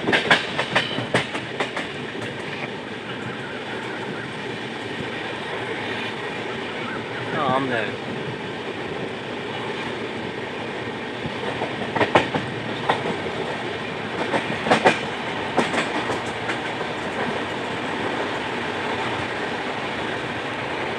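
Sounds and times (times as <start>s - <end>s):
wheels clacking over rail joints: 0.0s - 4.1s, 11.2s - 19.3s
train rolling rumble: 0.0s - 20.9s.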